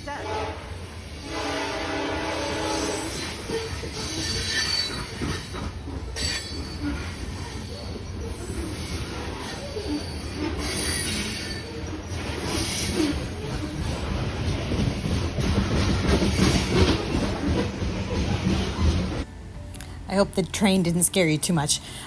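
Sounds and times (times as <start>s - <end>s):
train wheels rumbling on rails: 0.0s - 19.5s
high-pitched wheel squeals: 3.0s - 13.3s.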